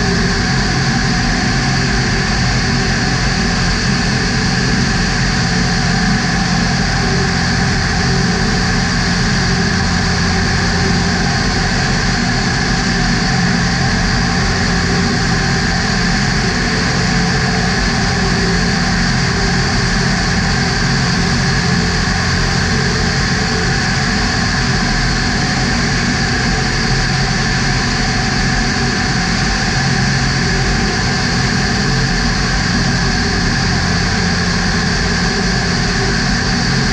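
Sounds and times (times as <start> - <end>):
aircraft engine and propeller droning: 0.0 - 36.9.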